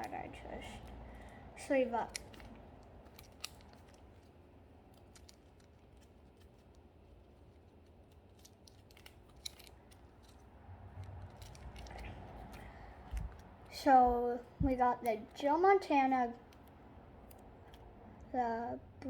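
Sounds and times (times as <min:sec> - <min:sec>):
trading cards in plastic sleeves: 0:00.0 - 0:13.9.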